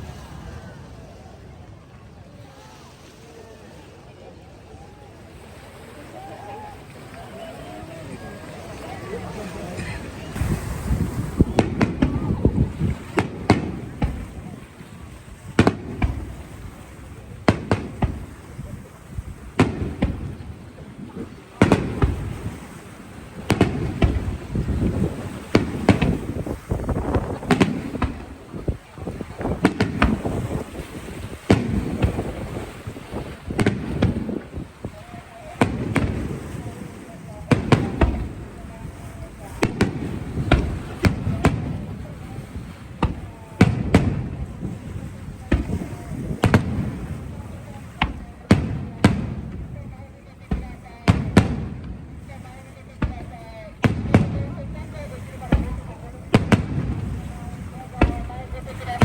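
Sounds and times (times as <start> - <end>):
fireworks bangs: 6.0 - 59.0
firework shells bursting: 9.8 - 34.9.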